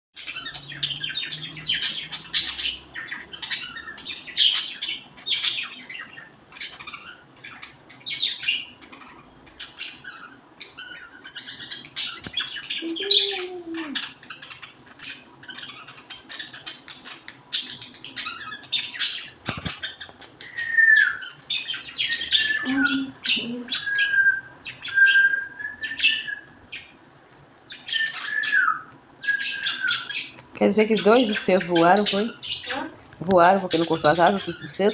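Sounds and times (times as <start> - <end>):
birds chirping: 0.2 - 34.9
whistled bird call: 20.4 - 26.7, 27.8 - 30.4.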